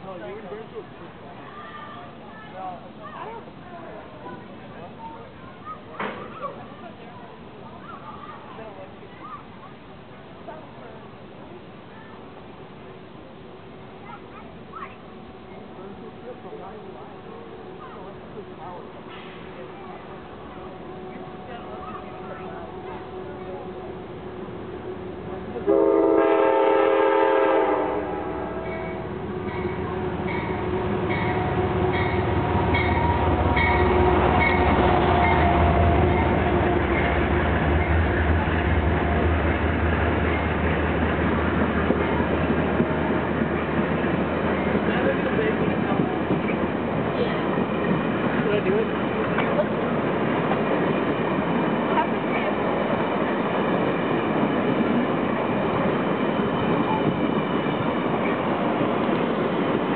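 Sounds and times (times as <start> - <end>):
passing train rumble: 0.0 - 59.9
locomotive bell ringing: 28.4 - 37.2.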